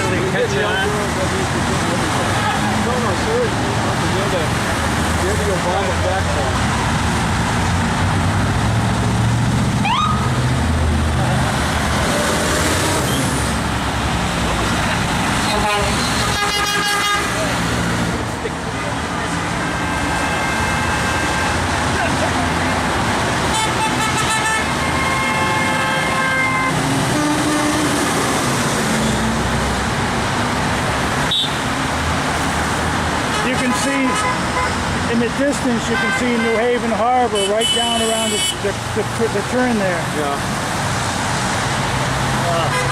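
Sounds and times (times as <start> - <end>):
highway traffic passing: 0.0 - 42.9
truck engines droning: 0.0 - 42.9
vehicle horns honking: 15.4 - 17.5, 19.6 - 21.8, 23.4 - 28.2, 31.2 - 31.7, 33.3 - 34.8, 35.8 - 38.8, 42.6 - 42.9.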